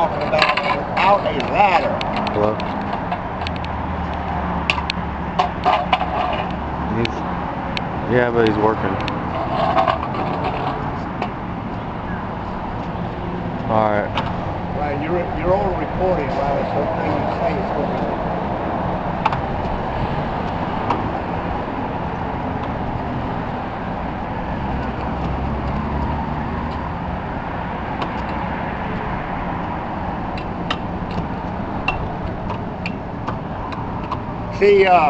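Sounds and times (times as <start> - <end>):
road traffic noise: 0.0 - 35.0.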